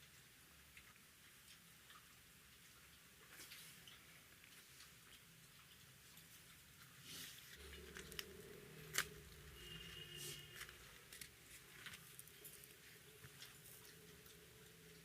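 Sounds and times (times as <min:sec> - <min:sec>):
bread squishing and tearing: 0:07.1 - 0:14.5.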